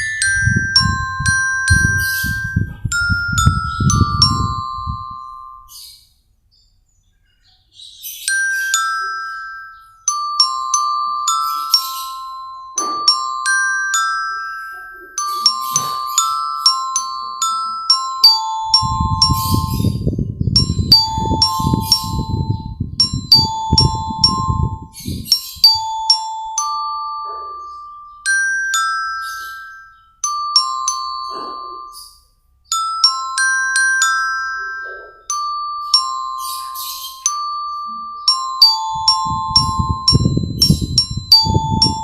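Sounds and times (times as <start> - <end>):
low rhythmic backing: 0.0 - 5.7
bell lyre melody: 0.0 - 6.2, 7.7 - 42.0.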